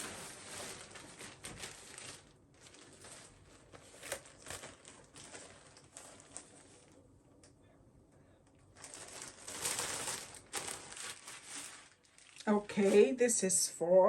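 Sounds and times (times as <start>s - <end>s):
packaging rustling and crinkling: 0.0s - 7.0s, 8.7s - 13.3s.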